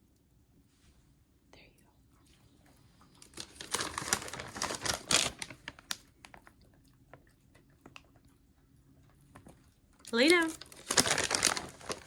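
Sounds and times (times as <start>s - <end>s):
plastic packaging crinkling: 3.2s - 6.5s, 10.1s - 12.0s.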